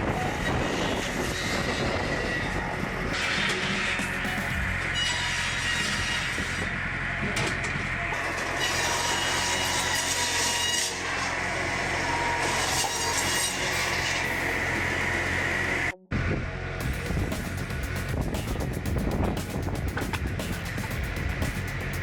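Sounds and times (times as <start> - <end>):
firewood saw cutting logs: 0.4 - 15.9.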